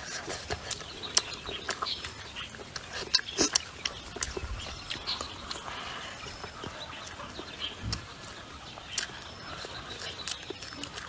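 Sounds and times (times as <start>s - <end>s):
crunching of crispy food: 0.0s - 5.7s, 7.8s - 11.0s.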